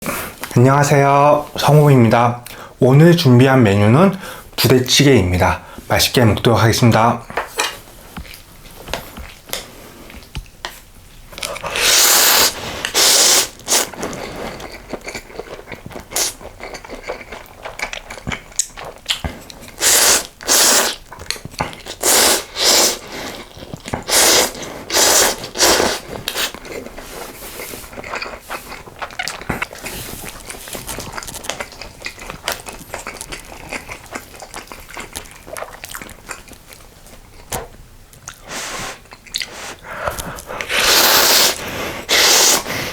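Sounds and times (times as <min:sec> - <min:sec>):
chewing: 0:11.3 - 0:42.9
slurping noodles: 0:11.5 - 0:14.9, 0:19.4 - 0:21.0, 0:21.8 - 0:28.8, 0:38.4 - 0:42.9.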